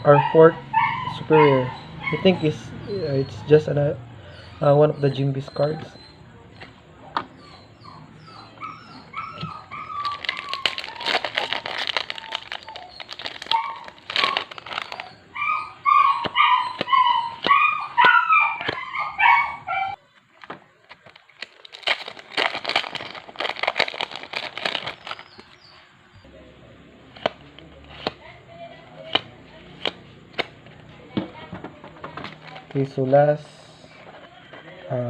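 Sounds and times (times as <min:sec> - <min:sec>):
animal high-pitched calls: 0:00.0 - 0:03.5, 0:07.3 - 0:20.0
foil wrappers crackling: 0:10.0 - 0:15.2, 0:20.2 - 0:25.6, 0:32.1 - 0:32.9.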